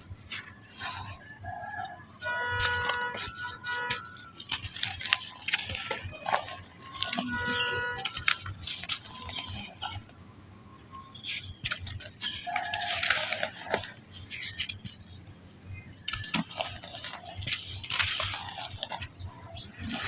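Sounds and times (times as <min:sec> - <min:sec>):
sand balls crumbling and crunching: 0:00.0 - 0:10.2, 0:10.8 - 0:20.0.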